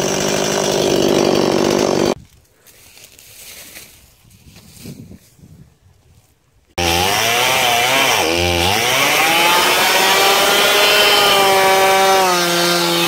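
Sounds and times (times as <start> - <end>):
chainsaw revving: 0.0 - 2.2, 6.8 - 13.0.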